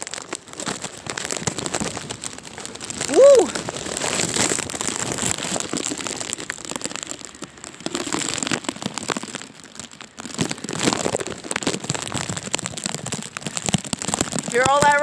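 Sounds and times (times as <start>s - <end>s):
heavy rain: 3.0s - 4.3s.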